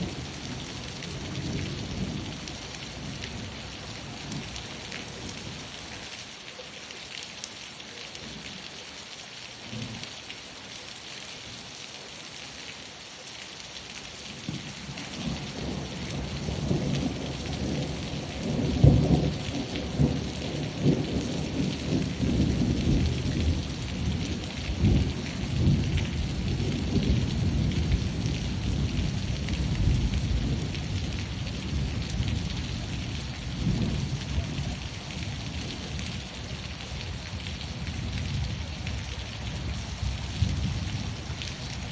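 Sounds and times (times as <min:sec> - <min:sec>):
rain falling: 0:00.0 - 0:41.9
thunder rumbling: 0:14.5 - 0:41.9.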